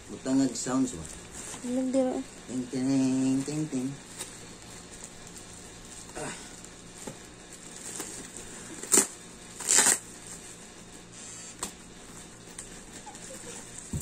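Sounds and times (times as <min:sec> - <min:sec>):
packaging ripping open: 0:07.7 - 0:10.1.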